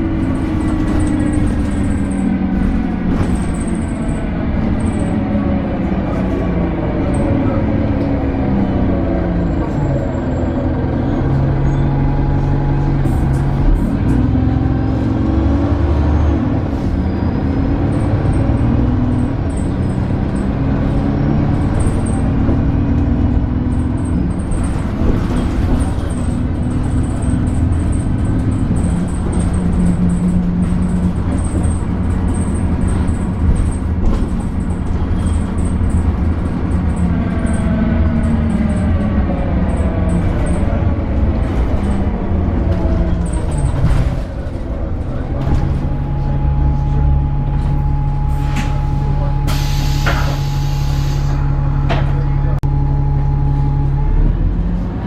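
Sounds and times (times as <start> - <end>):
bus engine changing gears: 0.0 - 55.0
air hiss: 49.5 - 51.4.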